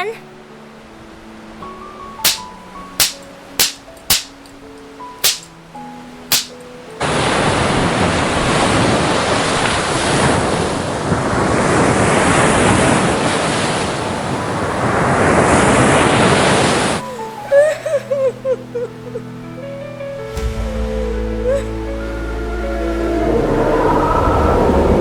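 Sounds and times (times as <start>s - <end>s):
ocean waves surging: 6.3s - 17.5s
soft music with sliding notes: 17.0s - 25.0s.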